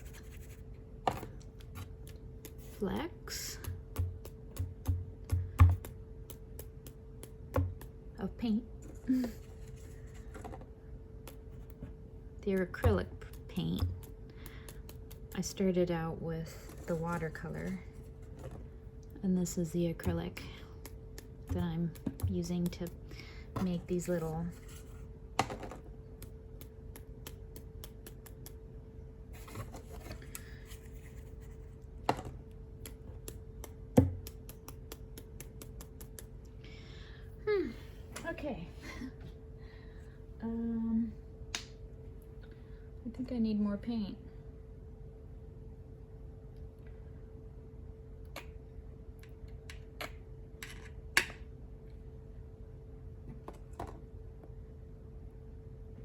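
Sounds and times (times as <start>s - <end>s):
scratchy brush sound: 0.0s - 0.6s
faint steady hum: 0.0s - 56.0s.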